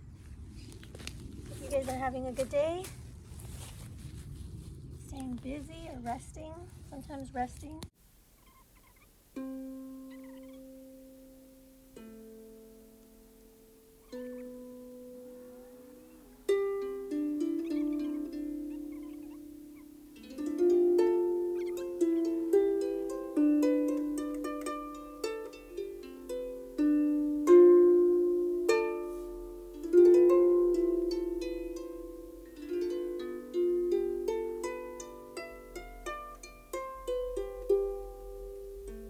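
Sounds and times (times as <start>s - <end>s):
harp melody: 9.3s - 39.0s.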